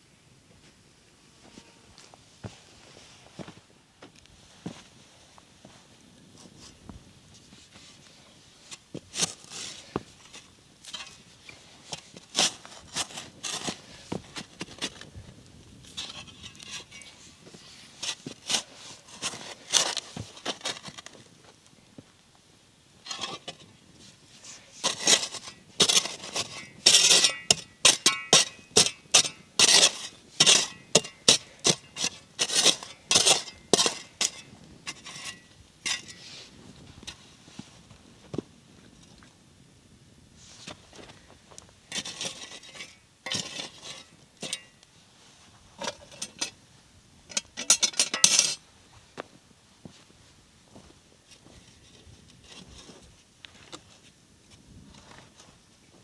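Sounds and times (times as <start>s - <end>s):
hard objects scraping and clinking: 24.8s - 36.4s.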